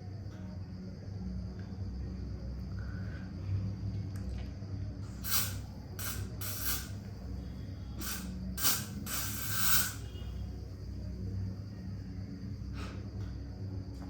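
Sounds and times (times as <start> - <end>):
spray hissing bursts: 5.2 - 7.0, 8.0 - 10.2.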